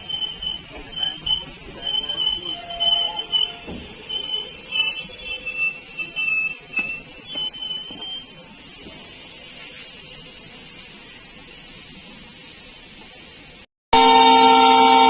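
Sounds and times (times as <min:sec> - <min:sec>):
train wheels squealing: 0:00.0 - 0:09.1.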